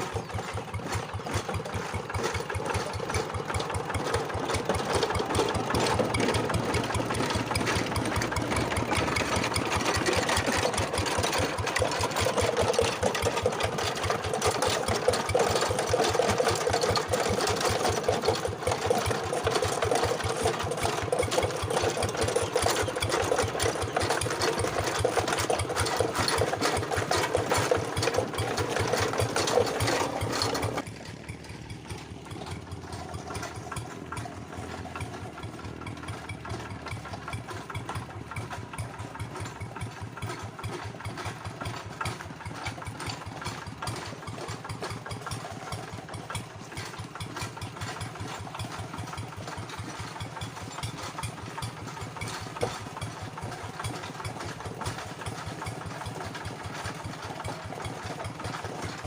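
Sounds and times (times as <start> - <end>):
diesel engine chugging: 0.0 - 59.0.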